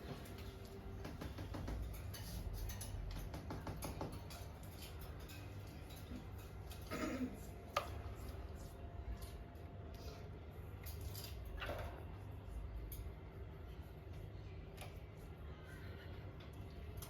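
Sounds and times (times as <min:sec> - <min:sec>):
birds clicking and scratching: 0:00.0 - 0:09.5.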